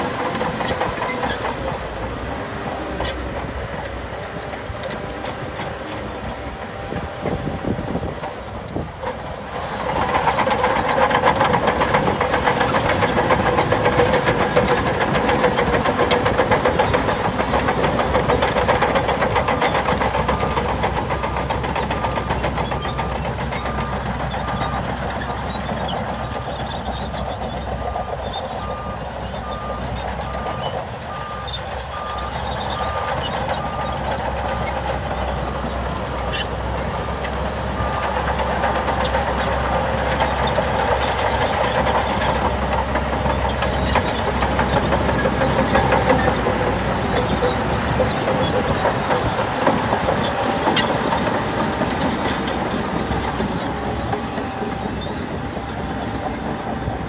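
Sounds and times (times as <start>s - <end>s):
heavy diesel machinery engines: 0.0s - 57.0s
reversing alarm beeping: 27.7s - 34.3s, 37.0s - 47.8s.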